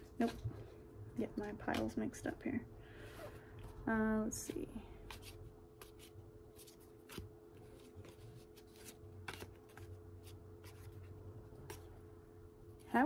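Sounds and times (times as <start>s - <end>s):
cards clicking and sliding: 5.0s - 11.9s.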